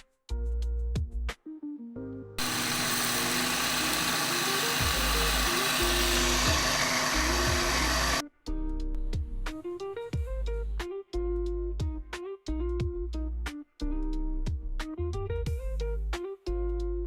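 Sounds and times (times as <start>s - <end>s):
background music with beat: 0.0s - 1.4s, 4.0s - 17.0s
blender motor running: 2.4s - 8.2s.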